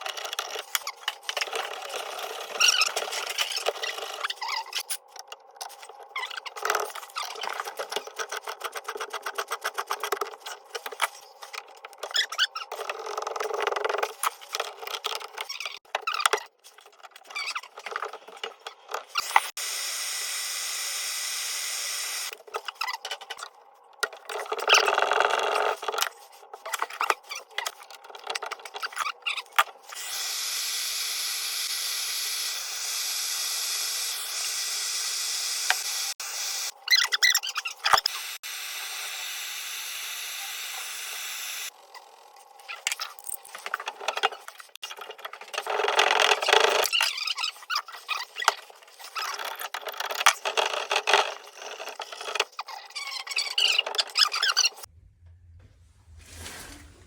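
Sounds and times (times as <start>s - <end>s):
knocks and scraping: 54.8s - 57.0s.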